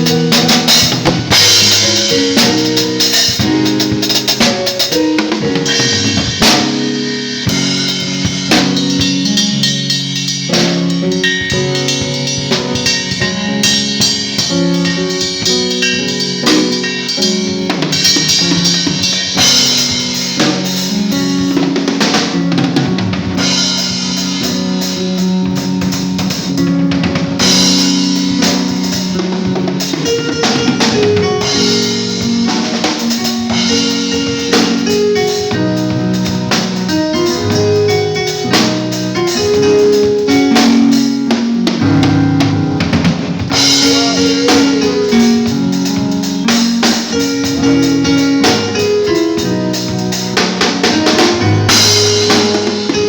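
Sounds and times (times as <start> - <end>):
drum kit playing a groove: 0.0 - 53.0
instruments playing held notes: 0.0 - 53.0.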